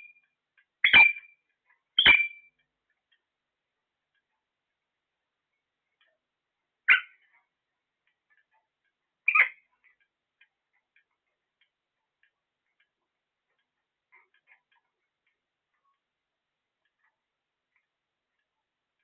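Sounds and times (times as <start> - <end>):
parrot calls: 6.9 - 7.3, 9.3 - 9.7.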